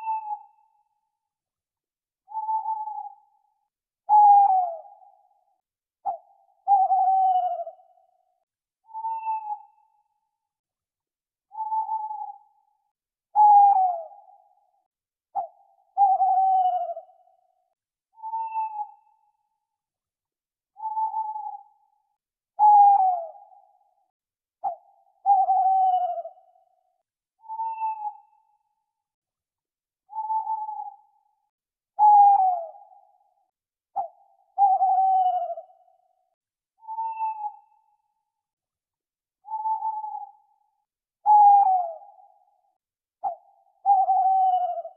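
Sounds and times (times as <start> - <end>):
owl hooting: 2.3 - 3.2, 4.1 - 5.1, 6.0 - 8.1, 8.8 - 10.0, 11.5 - 12.6, 13.4 - 14.4, 15.4 - 17.3, 18.2 - 19.1, 20.8 - 21.9, 22.6 - 23.8, 24.6 - 26.7, 27.4 - 28.6, 30.1 - 31.3, 32.0 - 33.4, 34.0 - 36.1, 36.8 - 38.1, 39.4 - 44.9.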